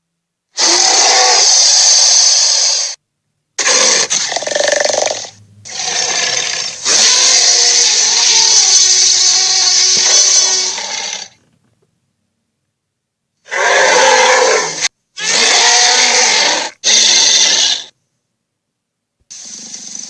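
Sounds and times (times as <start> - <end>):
dinosaur roars: 0.6 - 2.9, 3.6 - 11.3, 13.5 - 17.9.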